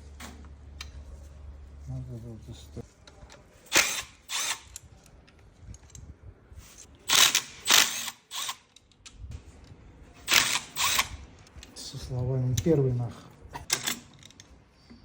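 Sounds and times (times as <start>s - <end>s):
power drill bursts: 7.1s - 8.6s, 10.3s - 11.1s.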